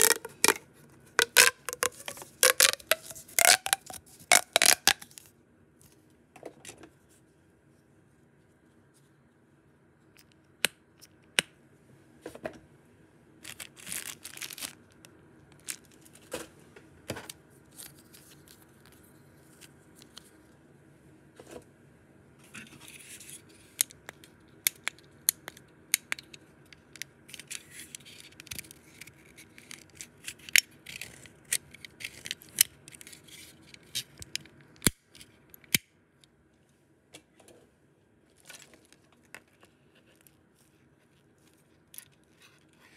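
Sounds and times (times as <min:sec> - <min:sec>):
packaging rustling and crinkling: 0:00.0 - 0:00.6, 0:01.2 - 0:05.2, 0:13.4 - 0:16.4, 0:38.3 - 0:42.7.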